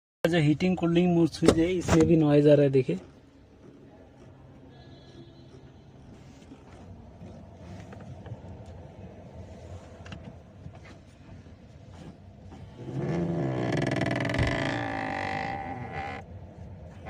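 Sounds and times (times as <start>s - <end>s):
groaning gear noise: 12.5s - 17.0s.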